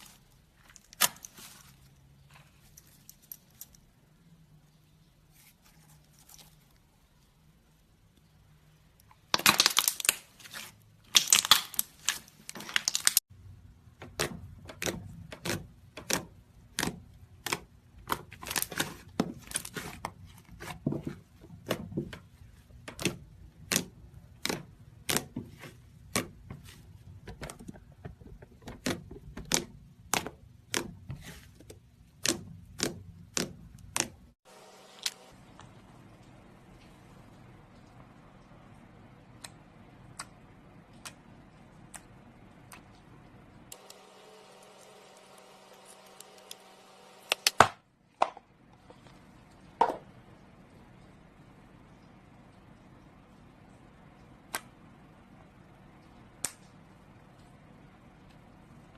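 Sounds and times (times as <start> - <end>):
slime crackling: 9.2 - 13.2.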